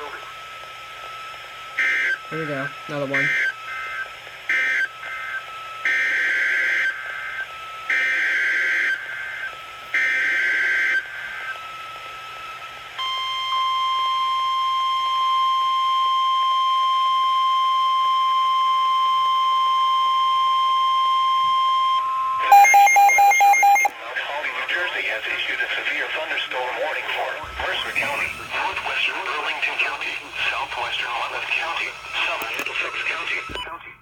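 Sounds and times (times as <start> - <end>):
steady warning alarm tone: 1.8 - 11.6, 13.0 - 23.9, 27.0 - 33.5
loud beeping: 22.5 - 23.9, 27.4 - 32.4
harsh data bursts: 25.3 - 33.6.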